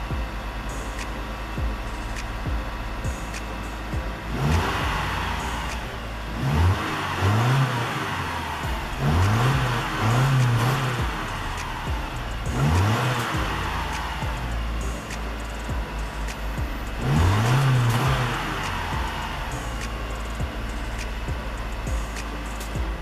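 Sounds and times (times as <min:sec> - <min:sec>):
car engine revving: 0:00.0 - 0:23.0.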